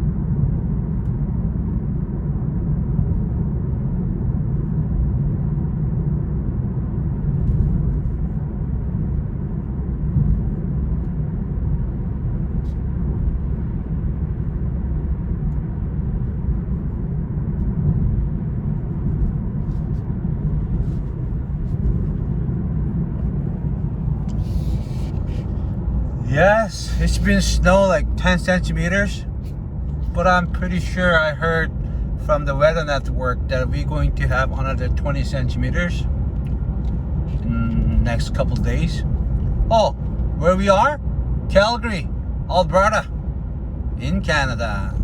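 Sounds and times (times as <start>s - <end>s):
car road and engine rumble: 0.0s - 45.0s.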